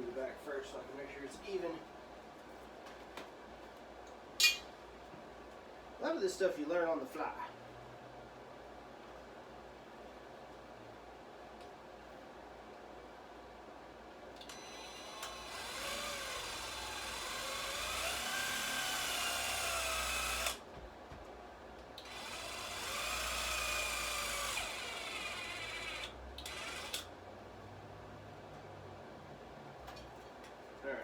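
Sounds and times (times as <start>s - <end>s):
power drill whining into wood: 14.4s - 20.6s, 22.0s - 27.1s.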